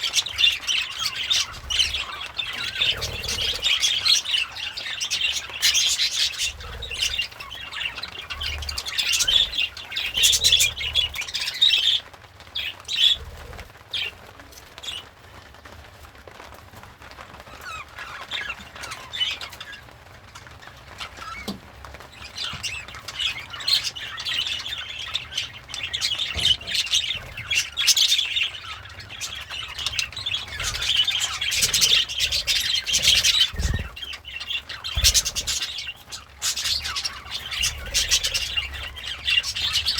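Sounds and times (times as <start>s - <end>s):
budgerigar chattering and warbling: 0.0s - 12.0s, 22.3s - 39.9s.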